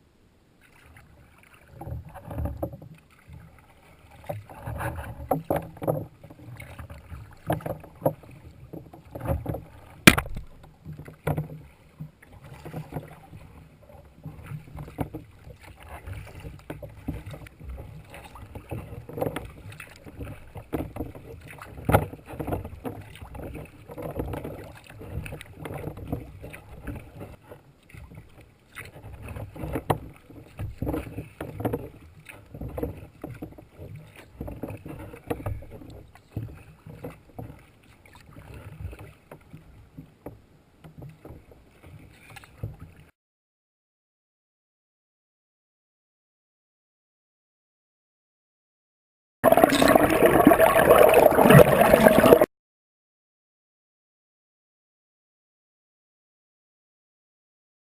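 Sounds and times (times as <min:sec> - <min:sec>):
paddle splashing in water: 0:00.6 - 0:43.2, 0:49.4 - 0:52.5
paddle clunking on kayak deck: 0:04.2 - 0:43.0.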